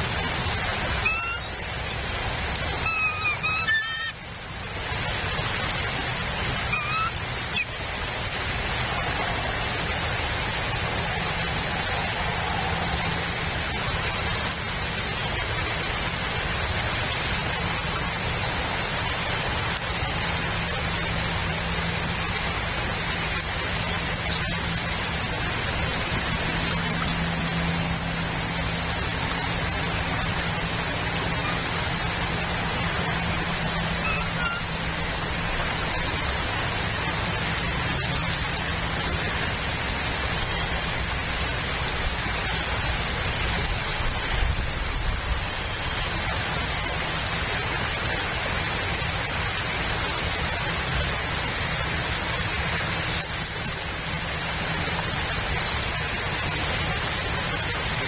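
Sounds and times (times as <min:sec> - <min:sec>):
rain hiss: 0:00.0 - 0:58.0
faint short bird call: 0:01.0 - 0:02.0.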